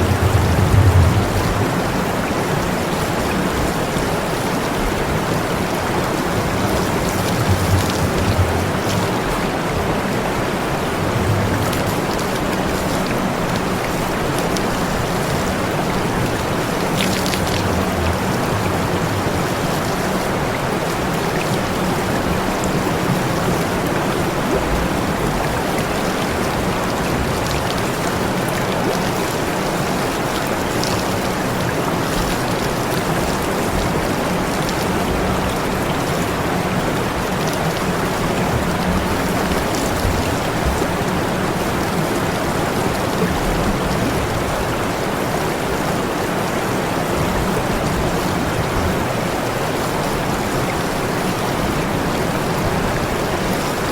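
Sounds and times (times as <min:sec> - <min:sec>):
faint low hum: 0:00.0 - 0:02.3
water spraying: 0:00.0 - 0:02.6.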